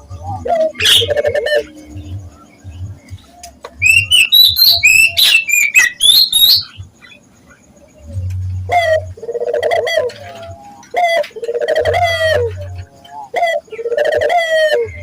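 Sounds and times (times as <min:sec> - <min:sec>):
dove cooing: 0:00.0 - 0:02.8, 0:08.6 - 0:15.0
small bird twittering: 0:00.7 - 0:07.2.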